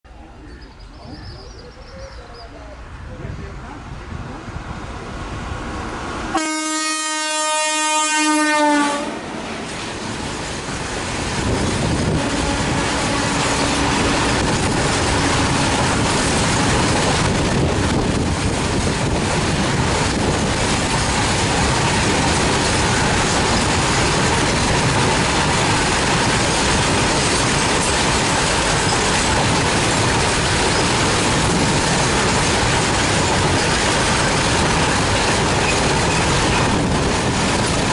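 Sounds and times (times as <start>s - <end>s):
train wheels running on rail: 3.6s - 37.9s
locomotive horn blast: 6.3s - 9.2s, 12.1s - 14.3s.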